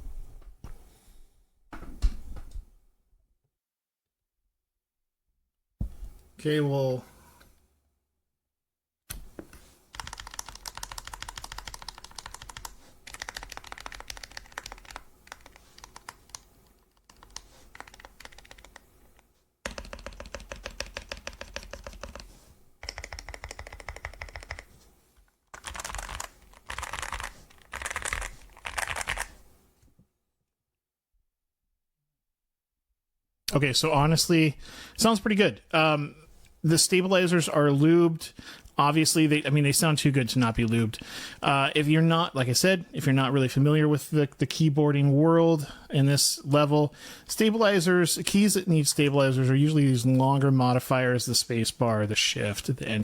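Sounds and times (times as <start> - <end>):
mechanical keyboard keys clicking: 10.0 - 16.4, 17.0 - 18.8, 19.7 - 22.2, 22.8 - 24.6, 25.6 - 29.3.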